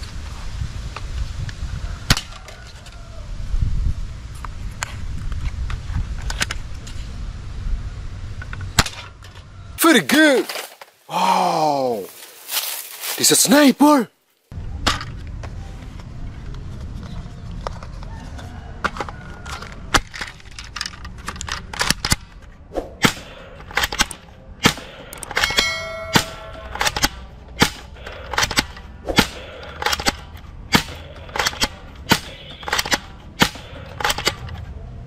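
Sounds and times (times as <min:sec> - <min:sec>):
short chiming ring: 0:25.5 - 0:26.6.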